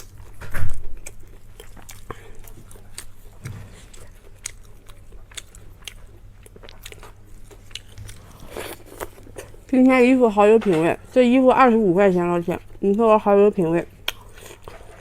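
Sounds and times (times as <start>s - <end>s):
chewing and biting food: 0.0s - 9.8s, 13.9s - 15.0s.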